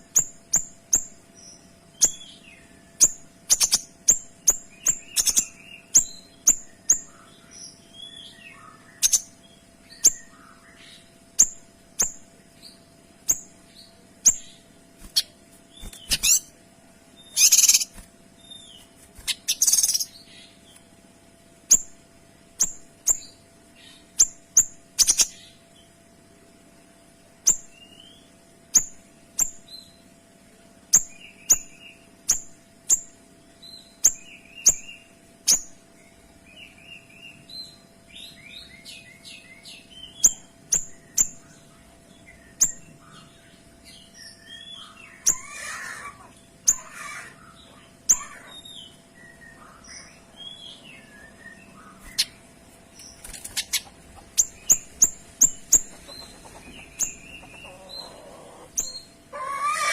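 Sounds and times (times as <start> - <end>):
bird twittering and warbling: 3.0 - 12.2, 14.2 - 16.6, 17.2 - 20.8, 40.0 - 59.9.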